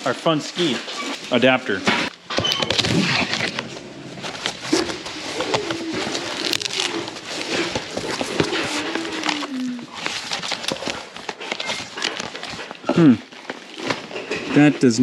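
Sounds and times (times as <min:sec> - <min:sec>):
packaging rustling: 0:00.6 - 0:14.3
metal parts clicking and knocking: 0:01.1 - 0:03.7.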